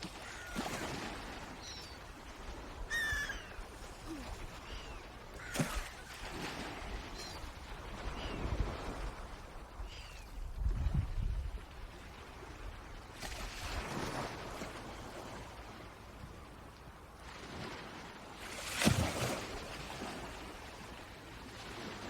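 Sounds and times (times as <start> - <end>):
swans calling: 2.8 - 5.6.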